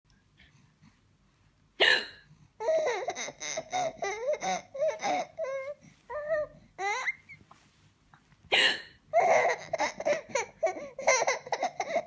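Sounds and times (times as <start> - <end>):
baby laughing: 2.6 - 5.8, 9.1 - 12.0.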